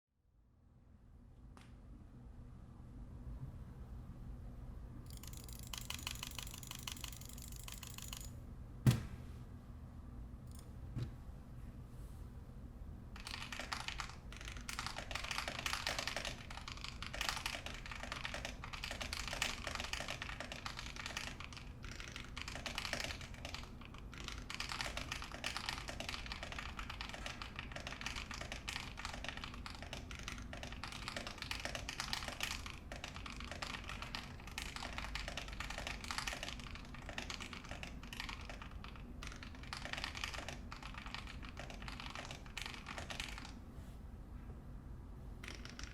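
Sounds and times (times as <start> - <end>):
fast typing on mechanical keyboard: 5.1 - 8.3, 13.2 - 43.6, 45.4 - 45.9.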